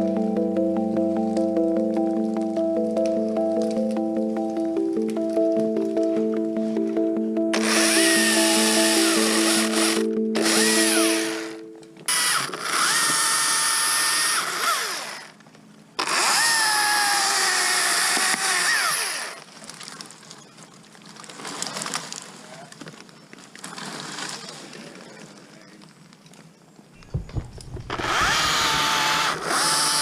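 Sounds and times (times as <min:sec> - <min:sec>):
background music: 0:00.0 - 0:12.1
chainsaw cutting wood: 0:07.6 - 0:11.2, 0:12.1 - 0:15.4, 0:16.0 - 0:19.4, 0:27.1 - 0:30.0.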